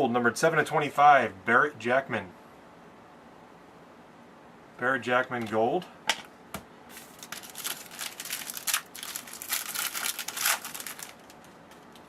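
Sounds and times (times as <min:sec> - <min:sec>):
plastic crinkling: 0:06.9 - 0:12.0.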